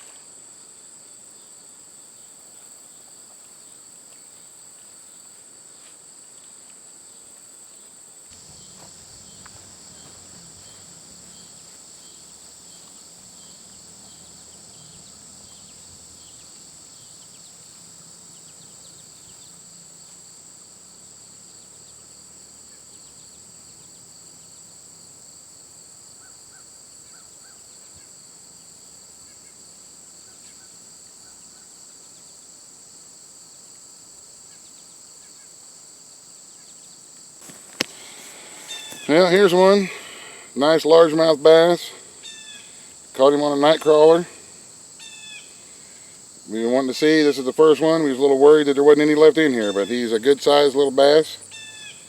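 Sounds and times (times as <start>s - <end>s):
insects chirring: 0.0s - 52.0s
low steady rumble: 8.3s - 18.7s.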